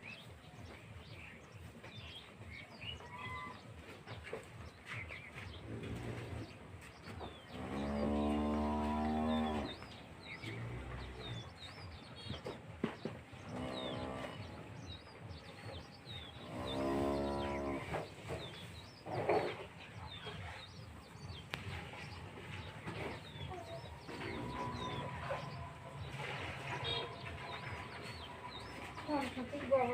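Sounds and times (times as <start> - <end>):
small birds chirping: 0.0 - 29.9
cattle mooing: 7.5 - 11.4, 13.4 - 14.5, 16.4 - 18.1, 23.6 - 28.9.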